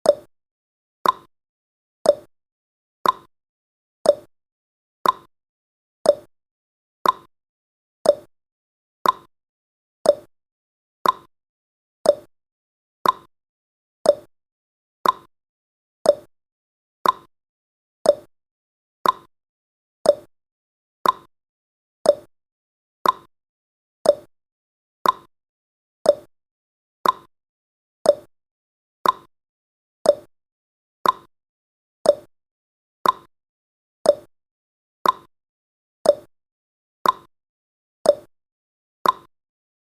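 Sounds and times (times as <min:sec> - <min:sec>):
clock ticking: 0:03.0 - 0:03.3, 0:05.0 - 0:05.3, 0:07.0 - 0:07.3, 0:09.0 - 0:09.3, 0:11.0 - 0:11.3, 0:13.0 - 0:13.3, 0:15.0 - 0:15.3, 0:16.1 - 0:16.3, 0:17.0 - 0:17.3, 0:18.1 - 0:18.3, 0:19.0 - 0:19.3, 0:21.0 - 0:21.3, 0:22.1 - 0:22.3, 0:23.0 - 0:23.3, 0:24.0 - 0:24.3, 0:25.0 - 0:25.3, 0:26.1 - 0:26.3, 0:27.0 - 0:27.3, 0:28.1 - 0:28.3, 0:29.0 - 0:29.3, 0:30.1 - 0:30.3, 0:31.0 - 0:31.3, 0:32.1 - 0:32.3, 0:33.0 - 0:33.3, 0:34.1 - 0:34.3, 0:35.0 - 0:35.3, 0:36.1 - 0:36.3, 0:37.0 - 0:37.3, 0:38.1 - 0:38.3, 0:39.0 - 0:39.3.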